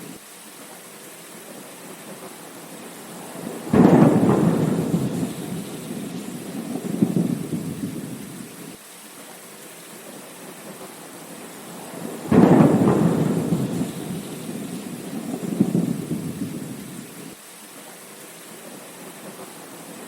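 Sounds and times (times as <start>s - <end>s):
steady rain: 0.0s - 20.0s
rolling thunder: 3.1s - 8.8s, 11.7s - 17.4s
loud thunder crack: 3.2s - 8.8s, 11.8s - 17.4s.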